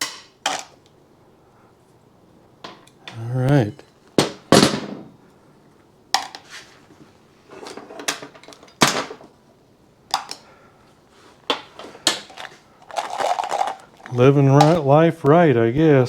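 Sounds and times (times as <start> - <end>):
ball bearings clinking: 12.3 - 15.3.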